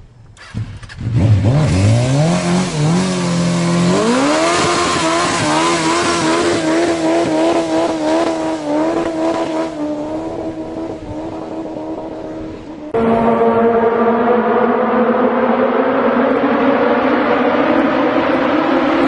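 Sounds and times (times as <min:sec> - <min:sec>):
motorcycle engine revving high: 0:00.4 - 0:19.0.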